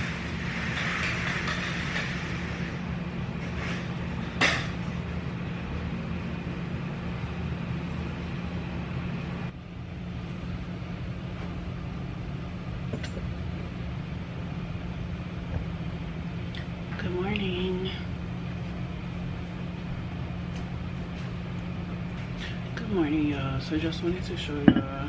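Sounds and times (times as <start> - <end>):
low rumble with hum: 0.0 - 25.0.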